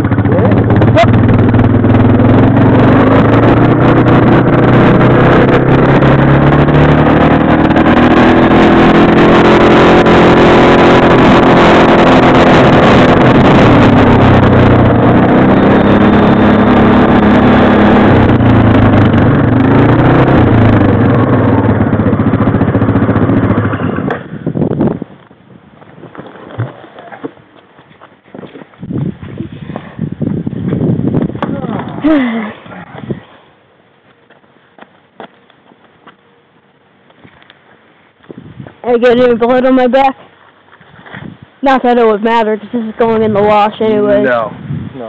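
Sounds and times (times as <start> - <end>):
quad engine revving: 0.0 - 25.0, 41.6 - 44.5
rushing noise: 0.0 - 25.0.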